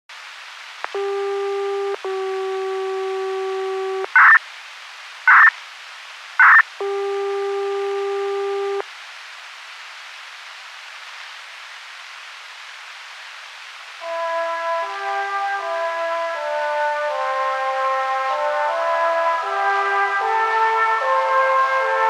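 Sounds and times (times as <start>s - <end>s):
radio hiss: 0.8s - 4.5s, 5.3s - 5.6s, 6.4s - 8.9s
steady buzzy tone: 0.9s - 4.4s, 6.4s - 8.8s.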